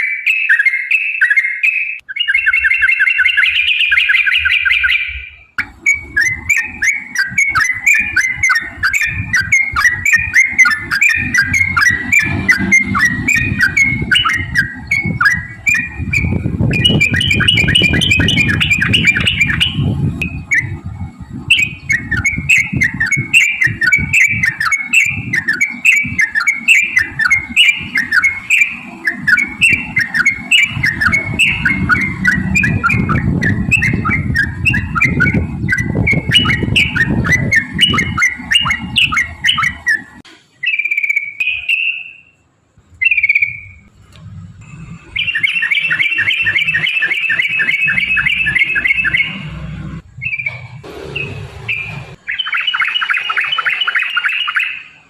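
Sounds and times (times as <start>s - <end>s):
bird singing chirping notes: 0.0s - 43.9s, 44.6s - 55.0s
loud low rumble: 5.6s - 24.5s, 27.0s - 40.2s, 43.5s - 46.8s, 48.0s - 52.3s.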